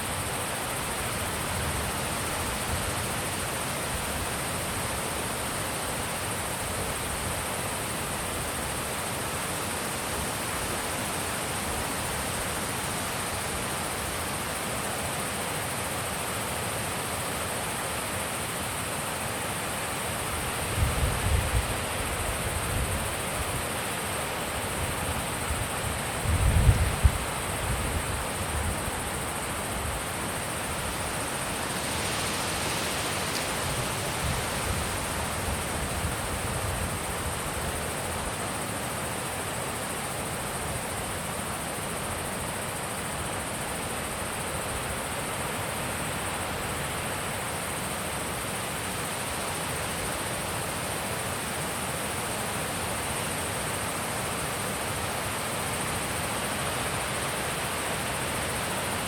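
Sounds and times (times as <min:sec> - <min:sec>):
wind gusts buffeting microphone: 0:26.2 - 0:28.9.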